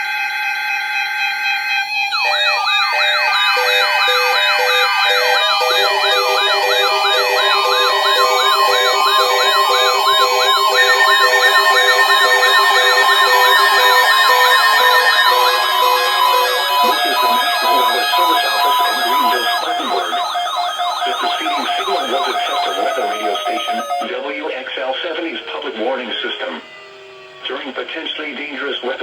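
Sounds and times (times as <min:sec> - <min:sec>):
warbling siren sweeps: 0:02.1 - 0:24.1, 0:25.1 - 0:28.3
pulsing beeps: 0:02.2 - 0:24.1
steady electronic alert tones: 0:02.2 - 0:24.1.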